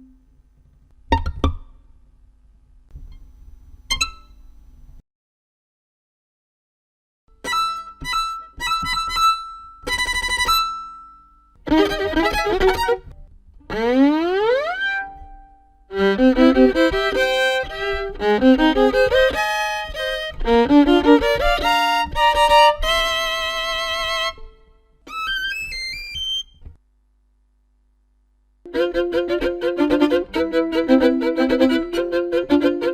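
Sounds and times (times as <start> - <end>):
violin playing: 7.4 - 10.9, 11.6 - 26.4, 28.7 - 32.9.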